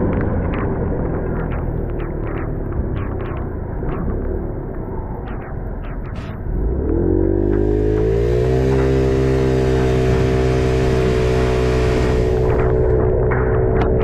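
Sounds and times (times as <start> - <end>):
road noise: 0.0 - 14.0
scooter engine pulling away: 6.5 - 12.9.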